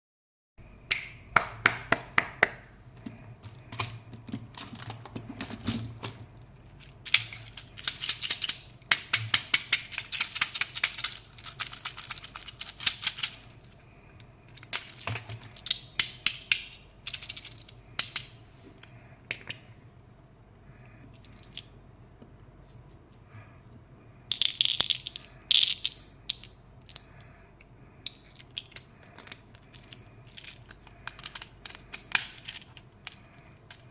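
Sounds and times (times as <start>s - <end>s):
hard candies rattling: 3.4s - 13.8s, 14.4s - 18.4s, 22.6s - 27.2s, 28.0s - 33.9s
crinkling plastic wrappers: 28.2s - 33.9s.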